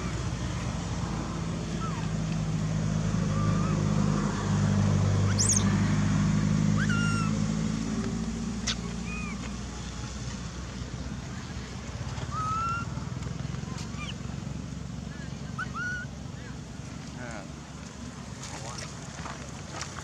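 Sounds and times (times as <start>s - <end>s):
vehicle engine running: 0.0s - 20.0s
short high chirps: 5.3s - 5.7s.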